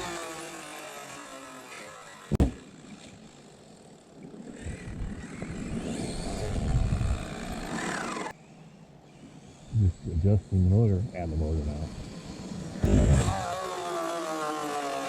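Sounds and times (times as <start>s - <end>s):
electric motor whine: 0.0s - 15.0s
sharp knock: 2.3s - 2.6s.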